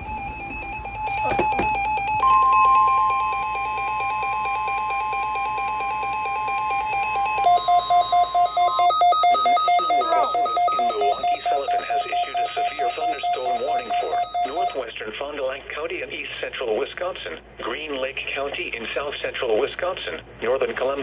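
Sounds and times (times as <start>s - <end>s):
steady high alarm tone: 0.0s - 14.8s
pulsing electronic beeping: 0.4s - 14.8s.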